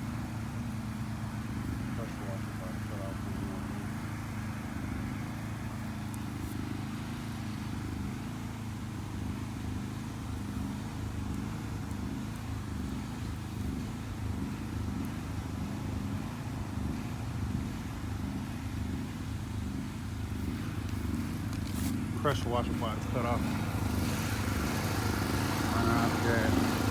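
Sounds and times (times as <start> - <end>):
pressure washer engine running: 0.0 - 26.9.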